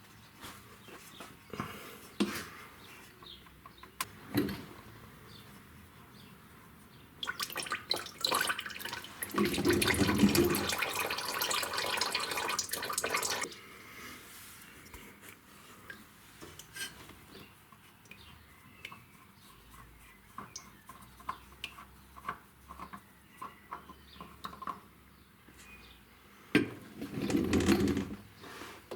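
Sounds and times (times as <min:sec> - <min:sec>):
liquid running: 0:07.2 - 0:13.6.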